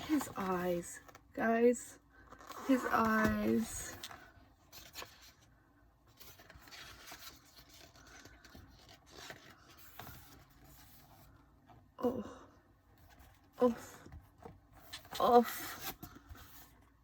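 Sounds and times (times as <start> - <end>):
paper pages rustling: 0.0 - 1.2, 6.1 - 11.4.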